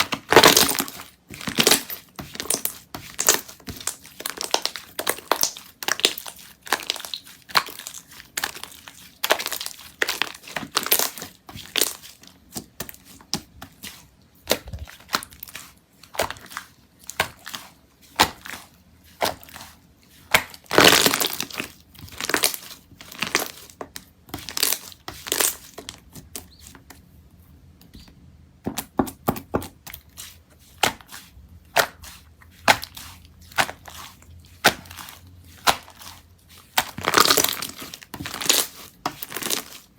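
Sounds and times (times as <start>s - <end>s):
slime crackling and popping: 0.0s - 12.1s, 20.3s - 23.6s, 34.6s - 39.9s.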